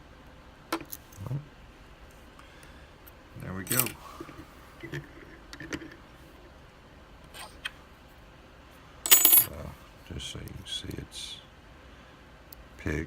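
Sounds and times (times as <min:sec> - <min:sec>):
metal clatter: 0:09.1 - 0:09.5.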